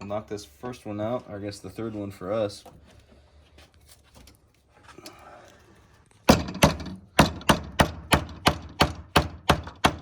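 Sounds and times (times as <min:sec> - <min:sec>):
faint handling noise: 0:00.6 - 0:06.2.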